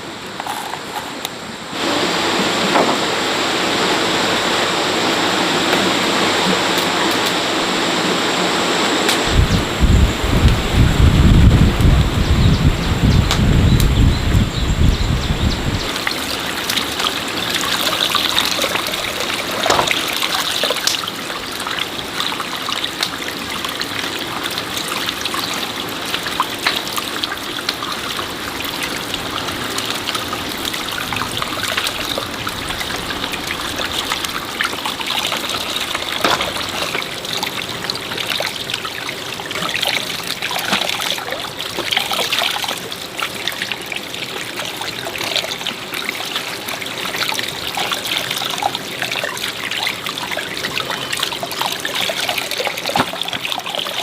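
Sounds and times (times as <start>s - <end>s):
water trickling: 0.0s - 54.0s
small water splashes: 15.8s - 54.0s.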